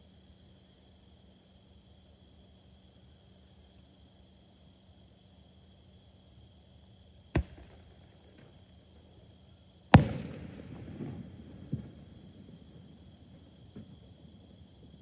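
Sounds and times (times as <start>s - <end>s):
crickets chirring: 0.0s - 15.0s
fireworks bursting: 7.4s - 8.6s, 10.0s - 15.0s
small firework pops: 7.4s - 9.2s, 10.0s - 15.0s.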